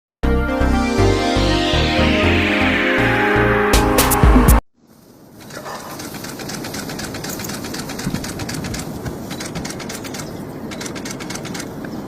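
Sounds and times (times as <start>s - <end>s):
rapid sharp clicks: 5.4s - 12.0s.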